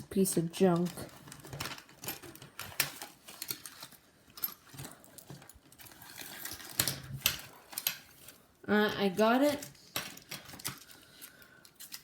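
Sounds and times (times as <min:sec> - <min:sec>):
tools clicking and rattling in bag: 0:00.6 - 0:08.3, 0:09.4 - 0:12.0.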